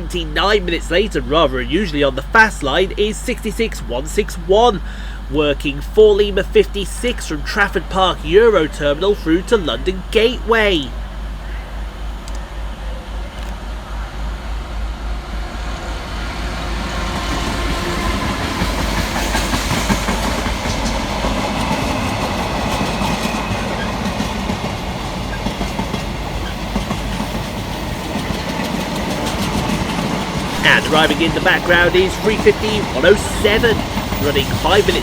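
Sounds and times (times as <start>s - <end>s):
diesel locomotive: 0.0s - 35.0s
wheels clattering over rails: 15.6s - 35.0s.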